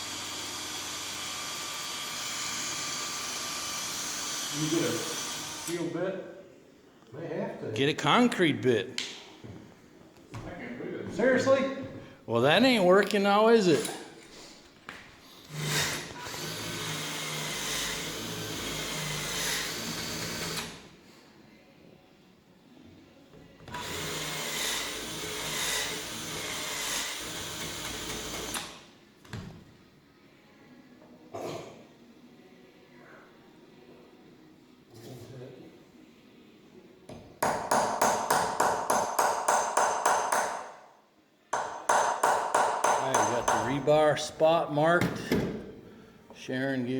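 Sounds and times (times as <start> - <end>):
electric drill running: 0.0 - 5.7, 15.5 - 20.8
hammer striking metal: 37.4 - 40.8, 41.6 - 43.8.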